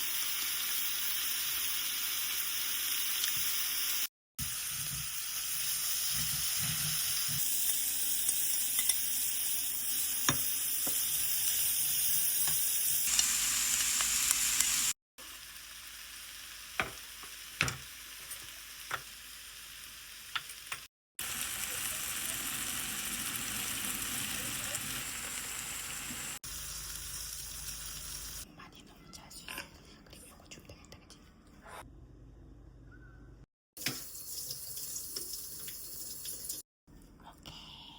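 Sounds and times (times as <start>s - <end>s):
pork sizzling in a pan: 0.0s - 28.4s.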